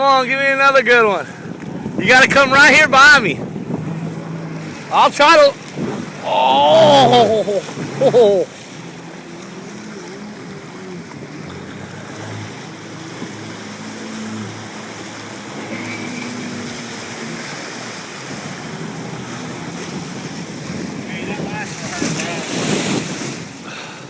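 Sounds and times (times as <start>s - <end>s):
wind buffeting microphone: 0.0s - 23.8s
jet ski engine running: 0.0s - 24.0s
water splashing: 0.0s - 24.0s.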